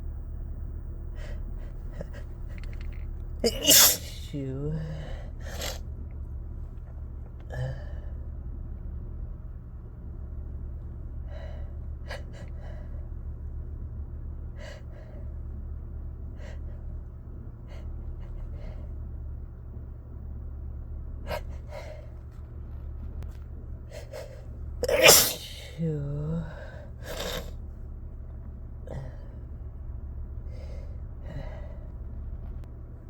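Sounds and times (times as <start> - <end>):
low hum inside car: 0.0 - 33.0
person gasping and sniffing: 3.4 - 5.8, 24.0 - 27.5
person sneezing: 3.4 - 5.8, 24.0 - 27.5.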